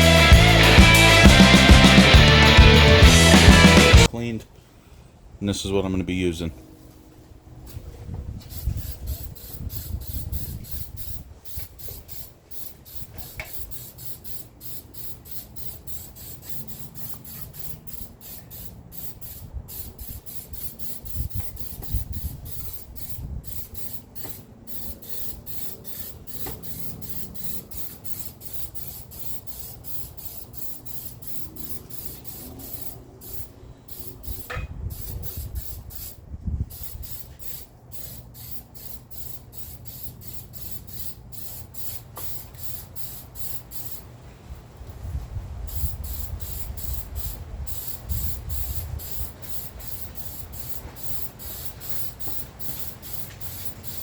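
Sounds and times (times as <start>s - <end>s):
aerosol spray can hissing: 36.8s - 44.0s, 45.7s - 54.0s.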